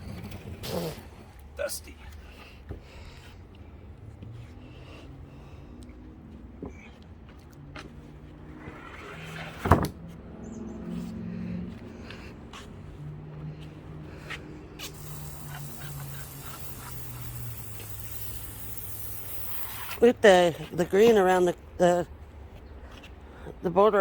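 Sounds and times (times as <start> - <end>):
soft hiss: 14.8 - 20.1.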